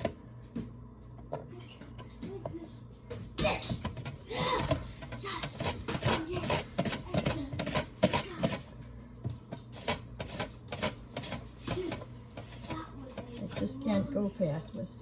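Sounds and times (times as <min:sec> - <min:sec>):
slicing peppers: 0:03.9 - 0:08.7, 0:09.5 - 0:13.8.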